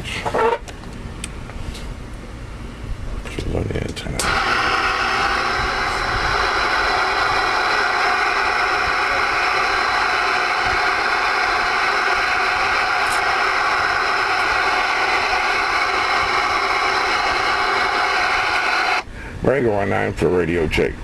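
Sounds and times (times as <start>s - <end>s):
radio static hiss: 4.2s - 19.0s.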